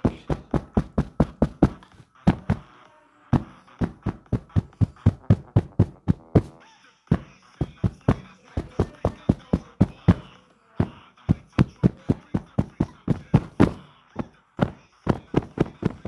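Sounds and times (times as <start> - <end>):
rapid sharp knocking: 0.0 - 2.7, 3.4 - 16.0.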